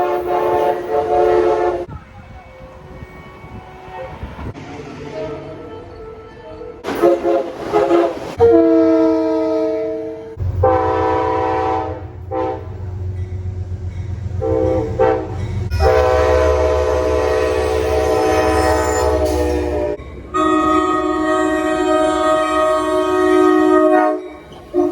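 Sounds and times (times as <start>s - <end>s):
locomotive air horn blasts: 0.0s - 1.9s, 6.8s - 12.9s, 14.4s - 24.9s
locomotive rumble: 0.0s - 24.9s.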